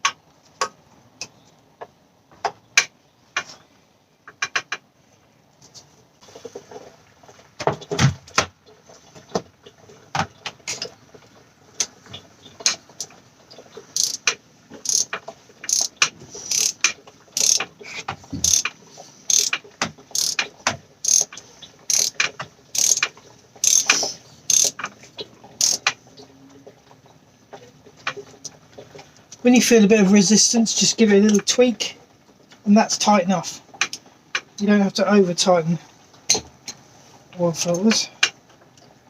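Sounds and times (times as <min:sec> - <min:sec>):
socket ratchet clicking: 0:14.0 - 0:17.7, 0:18.4 - 0:18.7, 0:19.3 - 0:21.3, 0:21.9 - 0:22.2, 0:22.8 - 0:24.9, 0:25.6 - 0:25.9.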